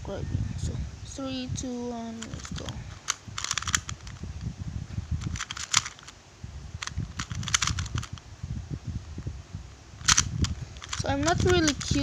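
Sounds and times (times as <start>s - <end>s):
puzzle cube plastic clicking: 2.2s - 4.2s, 5.2s - 6.2s, 6.8s - 8.2s, 10.0s - 12.0s.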